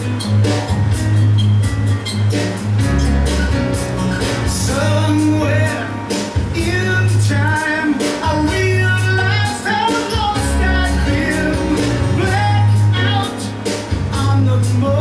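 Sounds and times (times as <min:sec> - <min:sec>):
bass: 0:00.0 - 0:15.0
drums: 0:00.0 - 0:15.0
guitar: 0:00.0 - 0:15.0
person singing: 0:03.9 - 0:15.0.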